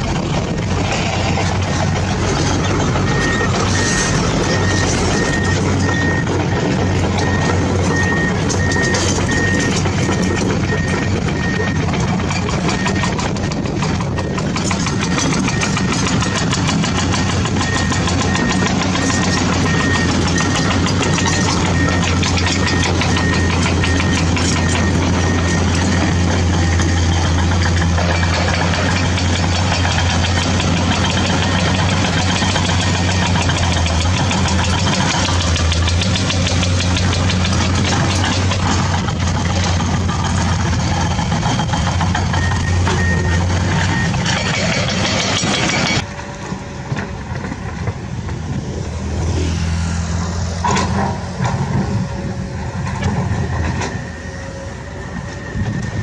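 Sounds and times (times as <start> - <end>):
diesel engine running: 0.0 - 56.0
warning alarm beeping: 2.4 - 13.5, 14.1 - 46.1.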